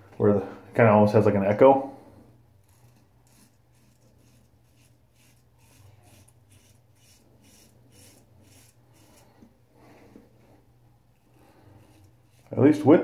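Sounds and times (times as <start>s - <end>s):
razor scratching stubble: 2.6s - 9.4s, 11.3s - 13.0s.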